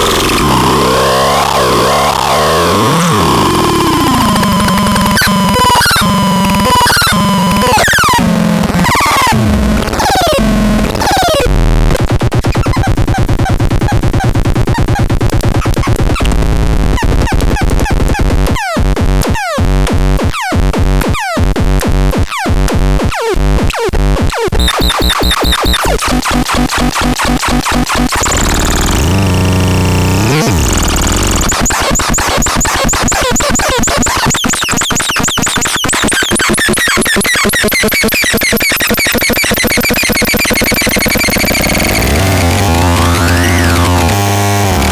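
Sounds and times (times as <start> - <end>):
harsh electronic buzzing noise: 0.0 - 11.5, 24.6 - 44.9
low electronic drone: 0.0 - 12.0, 24.6 - 37.1, 37.9 - 44.9
short falling electronic chirps: 24.6 - 26.1, 30.2 - 44.0.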